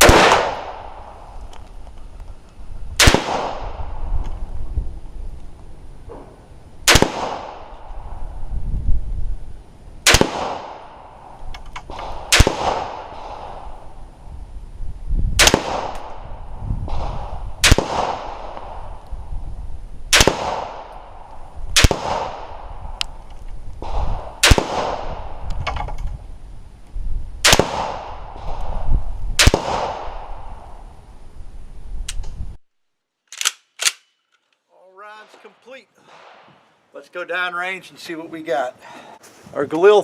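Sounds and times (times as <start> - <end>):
rifle shots with echo: 0.0 - 1.2, 3.0 - 3.8, 6.8 - 7.9, 10.0 - 11.3, 11.9 - 13.7, 15.4 - 16.2, 16.8 - 18.9, 20.1 - 21.2, 21.8 - 22.8, 23.8 - 25.4, 27.4 - 28.7, 29.4 - 30.5.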